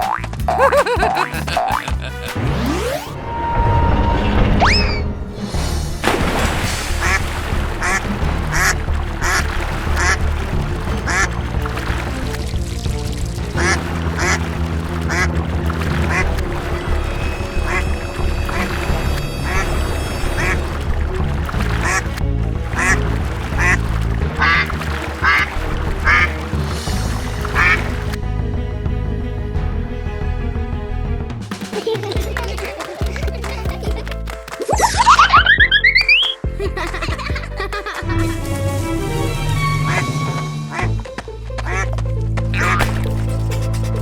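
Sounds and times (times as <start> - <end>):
cartoon duck quacking: 0.0 - 2.4, 41.7 - 41.9, 42.6 - 43.6
background music: 0.0 - 44.0
short quacking calls: 15.1 - 15.3, 17.7 - 17.9, 24.4 - 26.3, 27.5 - 28.0.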